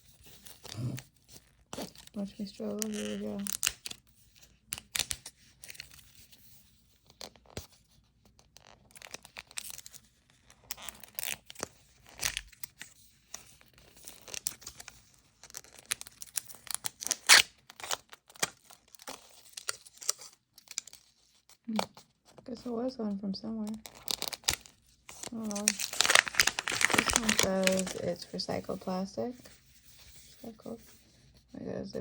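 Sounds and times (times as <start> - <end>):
plastic wrapping crinkling: 0.3 - 4.0, 10.6 - 22.6, 23.6 - 30.9
plastic tearing rips: 14.0 - 21.1, 23.7 - 28.1.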